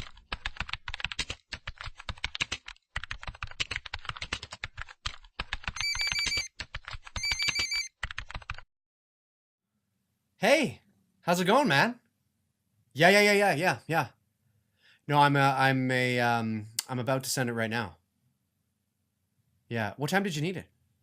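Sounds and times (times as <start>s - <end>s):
typing on computer keyboard: 0.0s - 8.7s
phone ringing with electronic trill: 5.8s - 6.5s, 7.2s - 7.9s.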